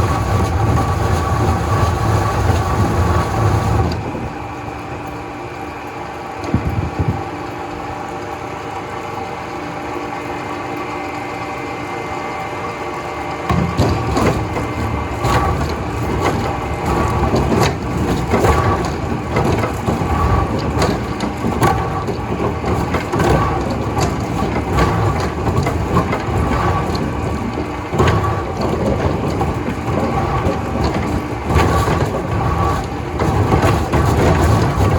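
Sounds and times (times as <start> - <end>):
factory machinery humming: 0.0 - 34.9
wood cracking and splintering: 13.5 - 34.9.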